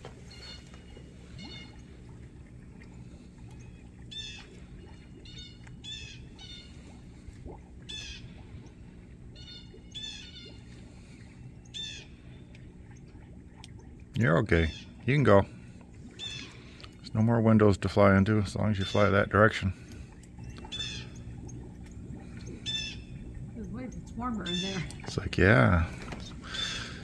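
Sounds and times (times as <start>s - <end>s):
steady low hum: 0.0s - 27.0s
starling harsh calls: 16.2s - 16.8s, 20.6s - 21.3s, 22.6s - 23.2s, 24.3s - 25.1s, 25.8s - 27.0s.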